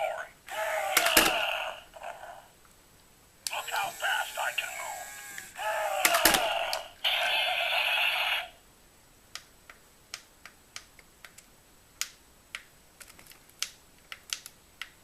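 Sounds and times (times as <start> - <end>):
toy electronic sound effect: 3.5 - 5.6.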